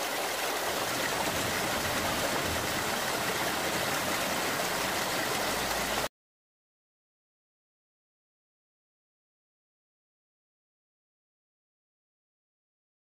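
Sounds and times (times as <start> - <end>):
stream rushing: 0.0 - 6.1.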